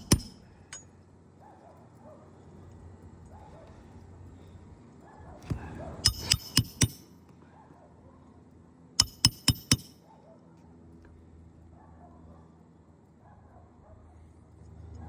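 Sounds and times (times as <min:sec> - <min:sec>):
hammer driving nails: 0:00.0 - 0:00.8, 0:06.0 - 0:07.1, 0:09.0 - 0:10.0.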